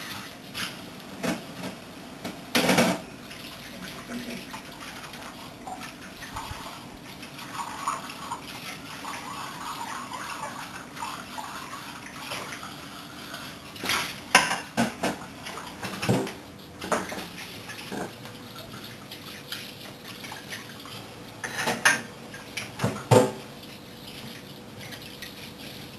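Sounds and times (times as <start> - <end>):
tap water running: 0.0 - 25.9
dishes knocking and clinking: 14.3 - 15.2, 21.4 - 22.1, 22.8 - 23.4.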